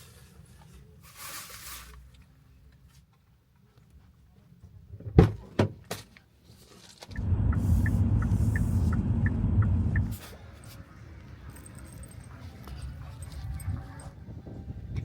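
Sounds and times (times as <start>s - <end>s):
faint regular ticking: 7.1s - 10.2s
low motor hum: 7.1s - 10.2s.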